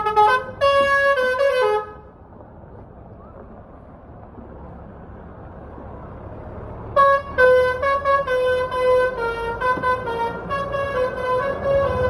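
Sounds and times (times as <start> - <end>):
bus horn playing a tune: 0.0 - 2.1, 7.0 - 12.0.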